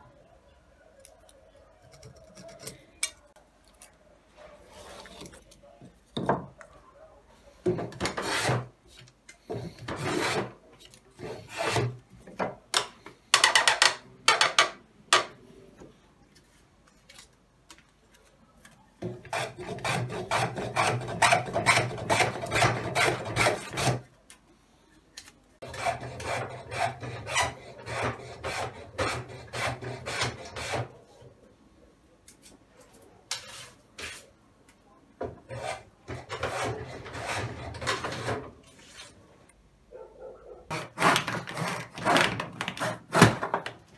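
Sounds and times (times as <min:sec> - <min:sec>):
hand tool scraping wood: 0:07.7 - 0:08.7, 0:09.4 - 0:10.6, 0:11.2 - 0:12.0, 0:19.2 - 0:24.0, 0:25.6 - 0:30.9, 0:35.5 - 0:39.2, 0:40.7 - 0:43.6.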